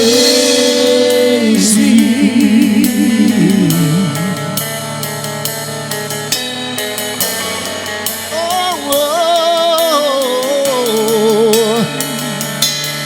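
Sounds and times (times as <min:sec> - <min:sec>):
bass and drum hits: 0:00.0 - 0:08.7
wavering lead melody: 0:00.0 - 0:13.0
worship band playing: 0:00.0 - 0:13.0.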